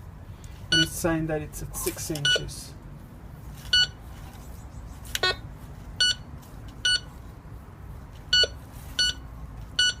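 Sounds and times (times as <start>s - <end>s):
metal detector short high beeps: 3.7s - 4.0s, 6.0s - 6.2s, 6.8s - 7.1s, 8.3s - 9.2s, 9.8s - 10.0s.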